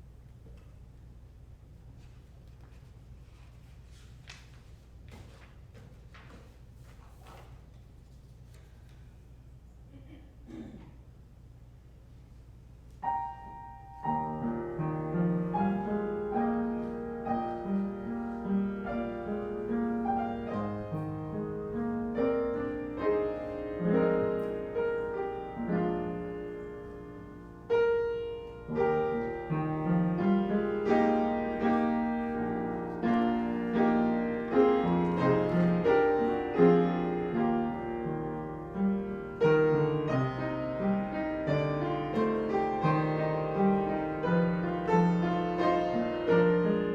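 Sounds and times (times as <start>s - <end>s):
piano playing: 13.0s - 46.9s.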